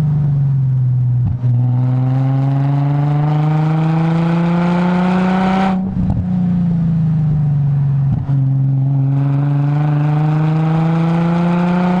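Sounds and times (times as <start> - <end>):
car engine revving hard: 1.6 - 5.8, 8.8 - 12.0.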